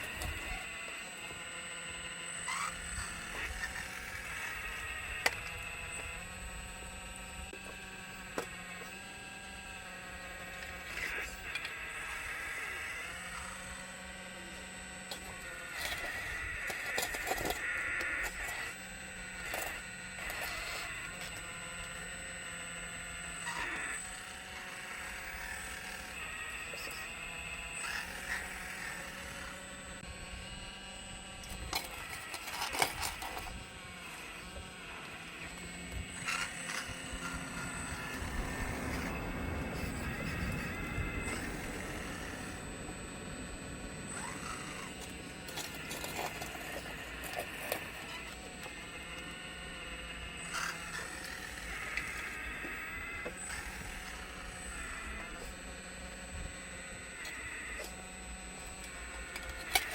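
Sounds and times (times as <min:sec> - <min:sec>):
electric motors whining: 0:00.0 - 0:59.9
motor hum: 0:00.0 - 0:59.9
clicks and clatter of moving parts: 0:31.4 - 0:33.6, 0:44.2 - 0:49.3, 0:58.7 - 0:59.9.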